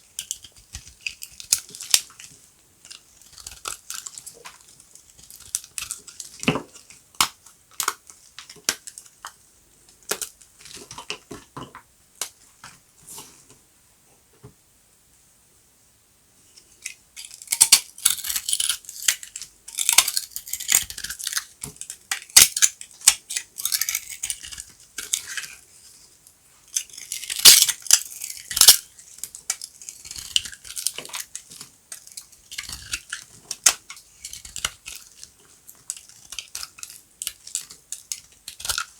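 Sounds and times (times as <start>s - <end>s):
knife cutting crunchy soap: 26.7s - 38.9s.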